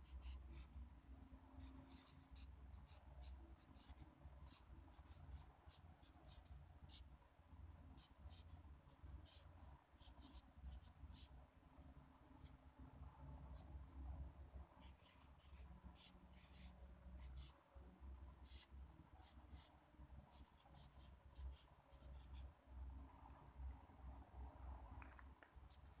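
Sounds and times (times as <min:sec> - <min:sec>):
pen scratching on paper: 0:00.0 - 0:00.7, 0:01.6 - 0:07.0, 0:10.0 - 0:11.3, 0:14.8 - 0:17.6, 0:18.4 - 0:19.7
faint low hum: 0:00.0 - 0:26.0.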